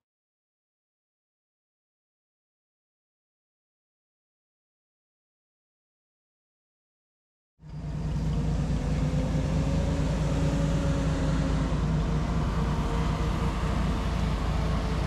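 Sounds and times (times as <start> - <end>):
diesel engine running: 7.6 - 15.0.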